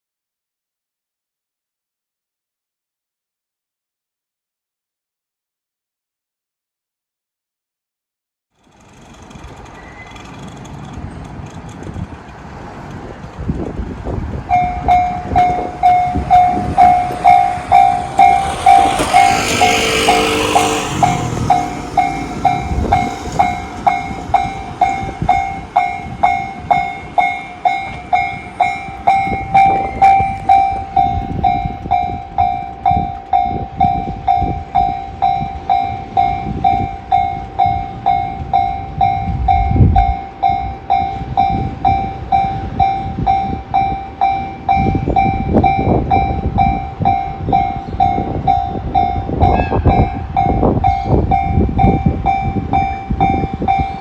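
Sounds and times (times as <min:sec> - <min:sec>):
train wheels clattering: 0:08.6 - 0:13.8, 0:14.5 - 0:34.9
train rumble: 0:08.6 - 0:54.0
level crossing alarm ringing: 0:14.5 - 0:54.0.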